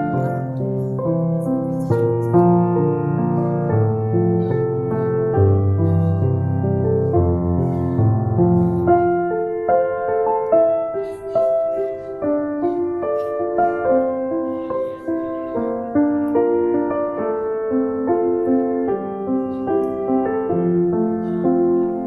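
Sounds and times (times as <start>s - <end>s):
gentle piano melody: 0.0s - 22.0s.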